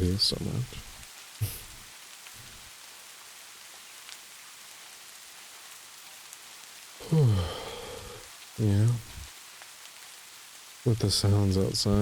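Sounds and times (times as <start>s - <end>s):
steady rain hissing: 0.0s - 12.0s
mouth sound: 7.0s - 8.2s.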